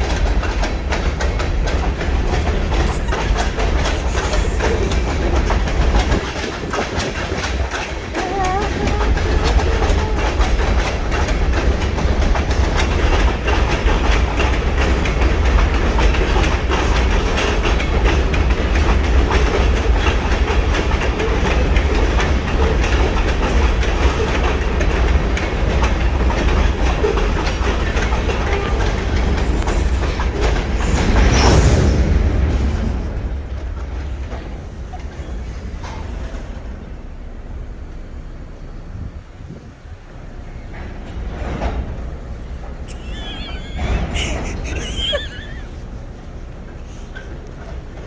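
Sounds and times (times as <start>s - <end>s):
freight train rumble: 0.0s - 48.0s
train wheels clicking on rails: 0.0s - 48.0s.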